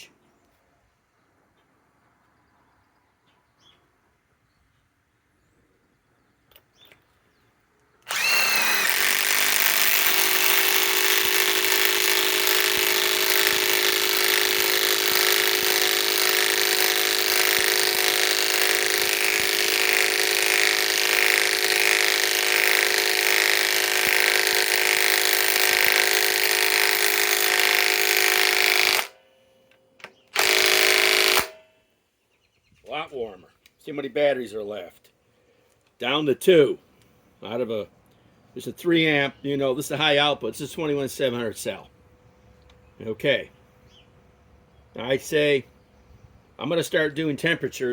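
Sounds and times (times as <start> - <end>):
impact wrench running: 8.0 - 29.2, 30.4 - 31.6.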